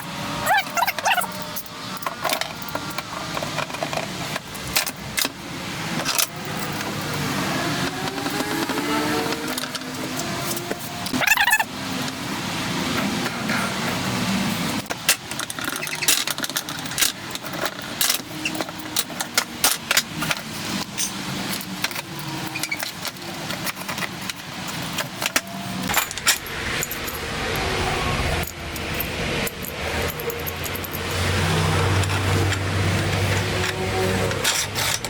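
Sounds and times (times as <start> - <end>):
workshop noise: 0.0 - 35.0
metallic clinks and rattles: 0.4 - 12.2, 14.7 - 35.0.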